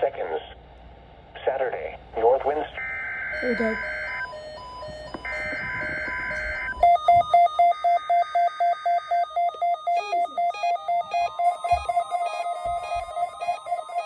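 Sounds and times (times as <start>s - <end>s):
higher tones stepping up and down: 2.8s - 14.0s
fast electronic beeping: 2.9s - 14.0s.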